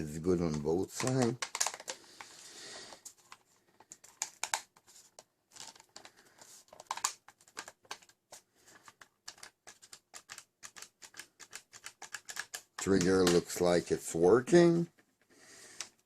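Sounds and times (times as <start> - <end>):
plastic clicks and taps: 0.4 - 2.3, 3.3 - 13.8.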